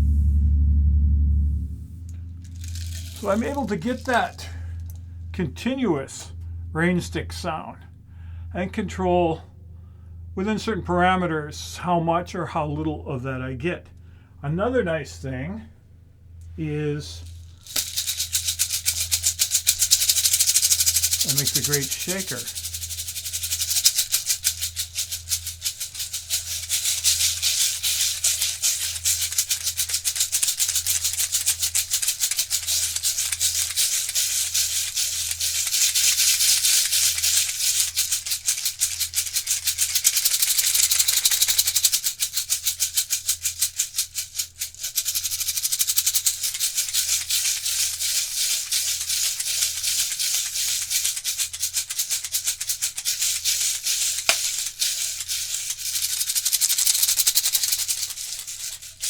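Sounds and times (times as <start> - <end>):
rain stick rattling: 2.0 - 6.4, 16.4 - 59.0.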